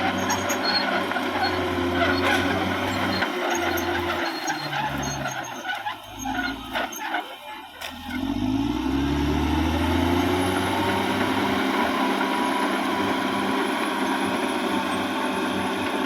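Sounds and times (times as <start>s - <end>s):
bulldozer diesel engine running: 0.0s - 16.0s.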